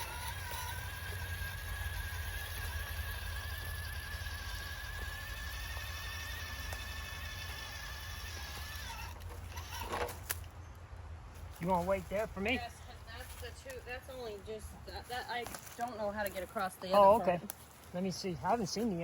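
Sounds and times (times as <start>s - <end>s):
electric motor whining: 0.0s - 10.4s.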